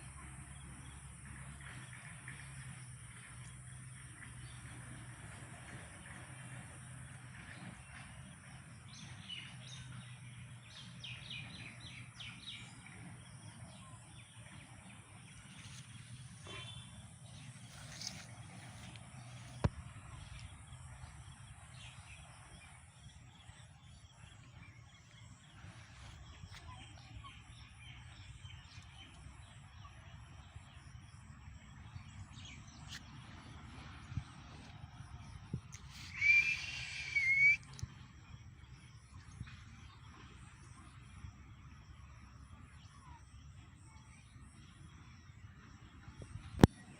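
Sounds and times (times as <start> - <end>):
faint bird chirps: 35.8 - 38.4.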